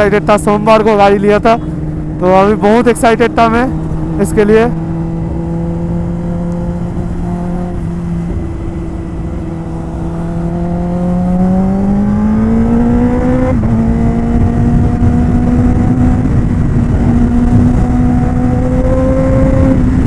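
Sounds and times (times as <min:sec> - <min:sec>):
motorcycle engine revving: 0:00.0 - 0:20.0.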